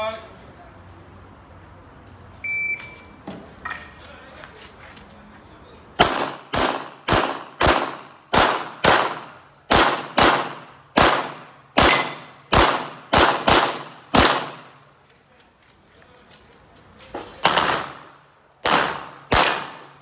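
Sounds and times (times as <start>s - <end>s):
handgun shots: 6.0s - 14.7s, 17.4s - 20.0s.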